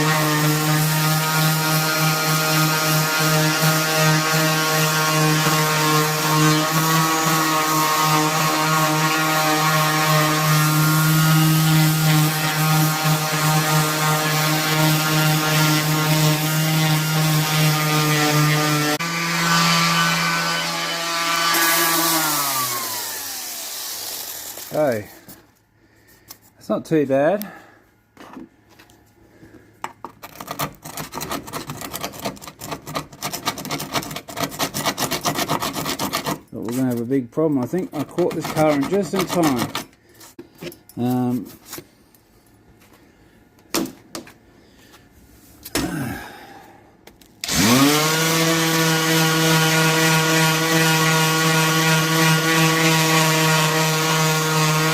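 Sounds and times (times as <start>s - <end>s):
power tool motor droning: 0.0s - 24.8s, 47.4s - 54.9s
hand scraping rusty metal: 29.9s - 41.9s.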